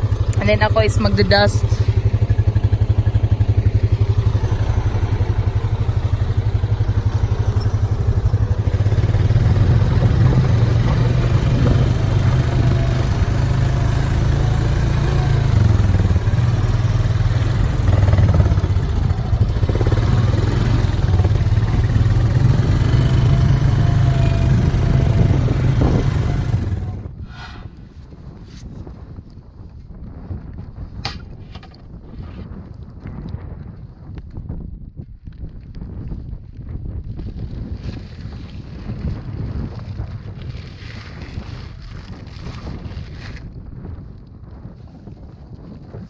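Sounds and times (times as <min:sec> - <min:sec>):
quad bike engine running: 0:00.0 - 0:27.2.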